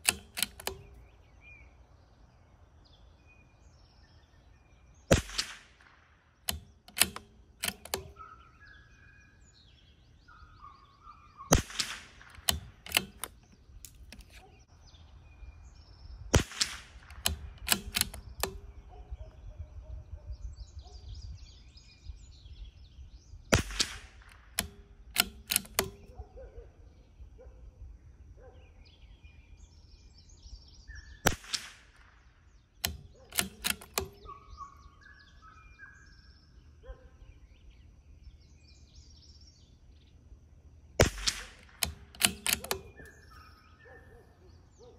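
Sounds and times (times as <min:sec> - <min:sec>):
rifle bolt clicks: 0:00.0 - 0:01.1, 0:05.1 - 0:08.3, 0:11.5 - 0:14.6, 0:16.4 - 0:18.9, 0:23.6 - 0:26.2, 0:32.8 - 0:34.4, 0:41.0 - 0:43.5
birds chirping faintly: 0:00.0 - 0:44.9
rifle shots: 0:05.1 - 0:08.2, 0:11.5 - 0:14.4, 0:16.3 - 0:18.8, 0:23.5 - 0:26.1, 0:31.3 - 0:32.2, 0:41.0 - 0:43.2.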